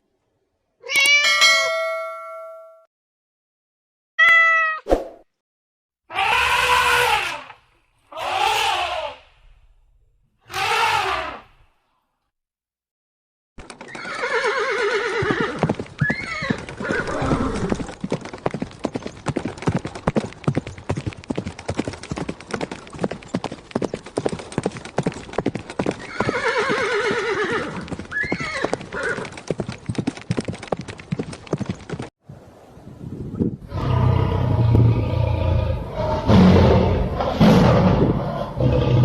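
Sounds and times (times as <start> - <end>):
horse whinnying: 6.1 - 9.2, 10.4 - 11.6, 13.8 - 17.9, 26.0 - 29.4
hooves clip-clopping: 13.6 - 32.1.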